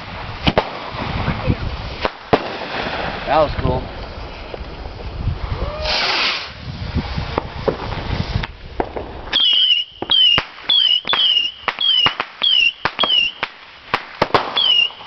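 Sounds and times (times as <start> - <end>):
firework crackling pops: 0.0 - 15.0
firework whistles: 5.4 - 8.6, 9.2 - 15.0.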